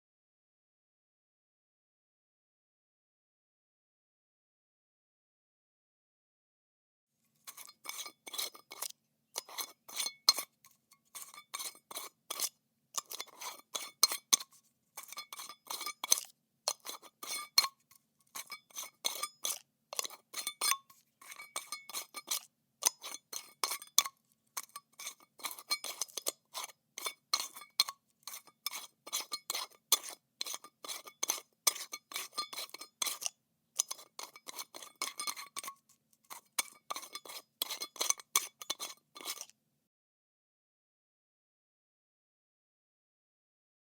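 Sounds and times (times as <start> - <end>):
metal lid screwing on glass jar: 7.5 - 39.5.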